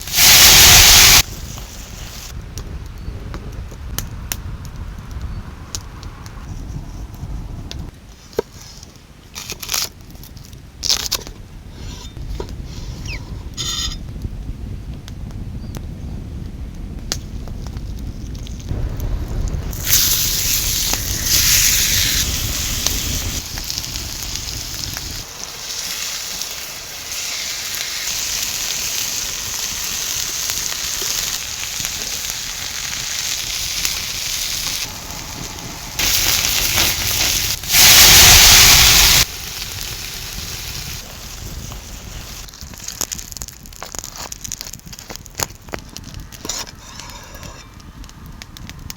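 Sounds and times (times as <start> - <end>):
steak sizzling: 0.0 - 2.3, 18.8 - 42.5
wood fire crackling: 0.0 - 7.9, 14.1 - 48.9.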